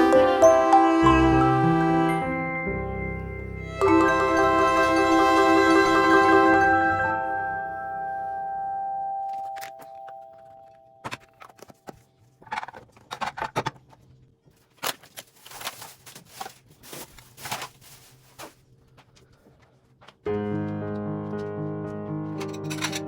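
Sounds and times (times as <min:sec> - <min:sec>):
background music: 0:00.0 - 0:10.4.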